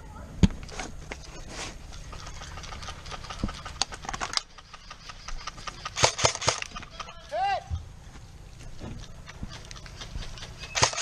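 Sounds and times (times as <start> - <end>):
airsoft gun shots: 5.7 - 6.8, 10.6 - 11.0.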